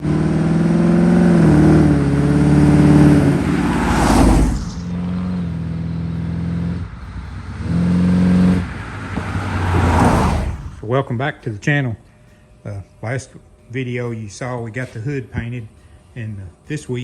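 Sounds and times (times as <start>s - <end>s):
vehicle engine running: 0.0s - 10.8s
rising whoosh: 0.4s - 10.9s.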